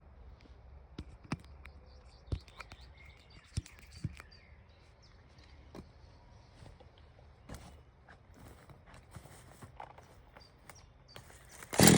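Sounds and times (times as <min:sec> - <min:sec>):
bird chirps: 0:01.4 - 0:06.6.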